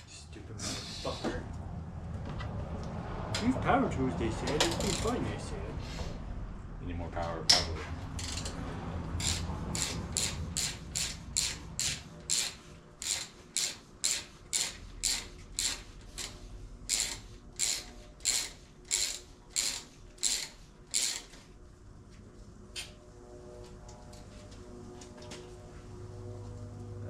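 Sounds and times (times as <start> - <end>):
socket ratchet clicking: 8.2 - 8.6, 9.2 - 21.3.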